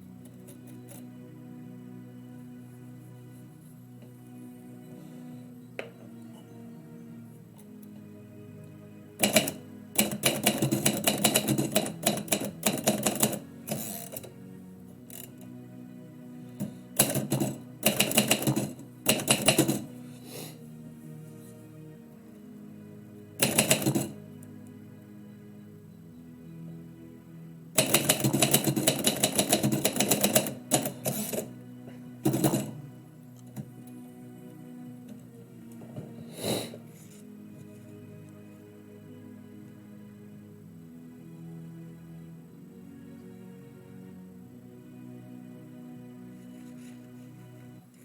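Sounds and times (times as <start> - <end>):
quiet background music: 0.0 - 48.0
typewriter keys striking: 9.2 - 14.3, 17.0 - 19.9, 23.4 - 24.2, 27.8 - 31.5, 32.3 - 32.8.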